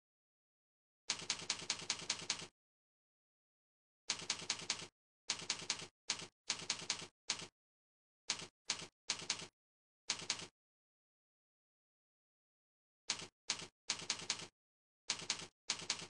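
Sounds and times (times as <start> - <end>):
sharp cursor clicks: 1.1 - 2.5, 4.1 - 7.5, 8.3 - 9.5, 10.1 - 10.5, 13.1 - 14.5, 15.1 - 16.0.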